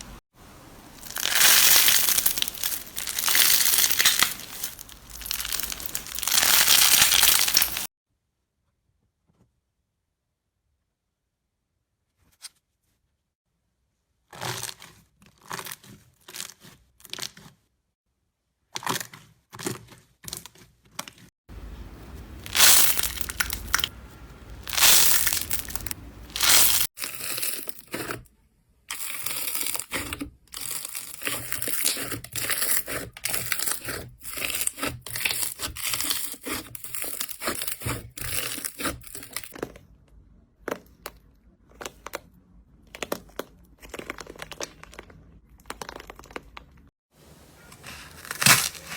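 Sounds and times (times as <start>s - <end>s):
slime crinkling and crackling: 0.8s - 7.9s, 14.3s - 17.6s, 22.1s - 28.2s, 28.9s - 40.0s, 40.6s - 46.9s, 47.7s - 48.9s.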